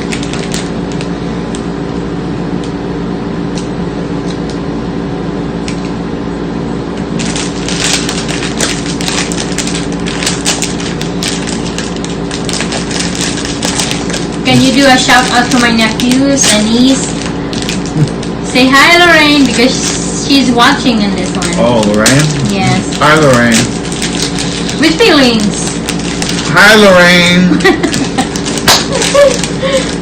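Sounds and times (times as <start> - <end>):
plastic wrapper crinkling: 0.0 - 1.6, 7.1 - 19.9, 21.2 - 30.0
steady low hum: 0.0 - 30.0.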